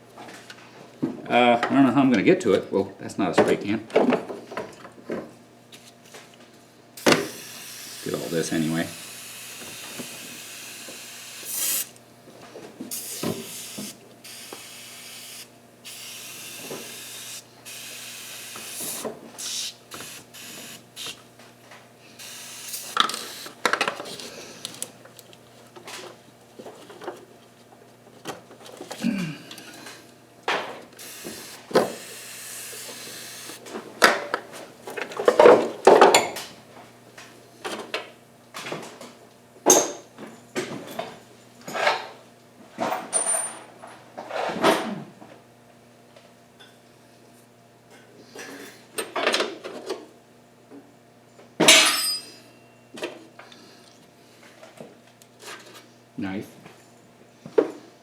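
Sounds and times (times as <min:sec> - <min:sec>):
metal tools clinking and scraping: 0:51.7 - 0:52.5.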